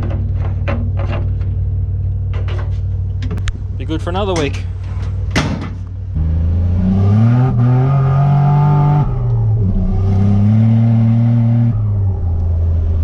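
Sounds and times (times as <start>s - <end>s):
car engine accelerating: 6.1s - 13.0s.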